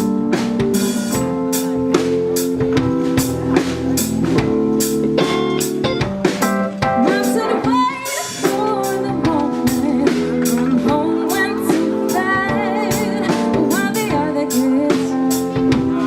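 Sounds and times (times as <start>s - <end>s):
live band playing: 0.0s - 16.0s
drum hits: 0.4s - 8.6s
lead singer: 6.9s - 16.0s.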